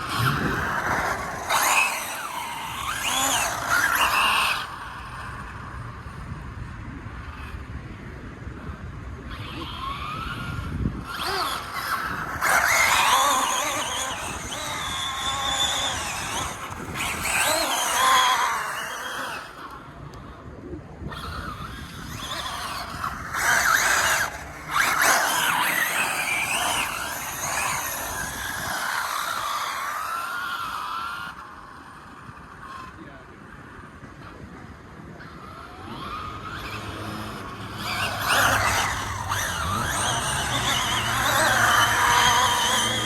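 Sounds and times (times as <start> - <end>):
electric motor whine: 0.0 - 6.4, 9.4 - 20.4, 21.0 - 43.0
tyres squealing on pavement: 11.1 - 19.4, 21.7 - 31.2, 36.0 - 43.0.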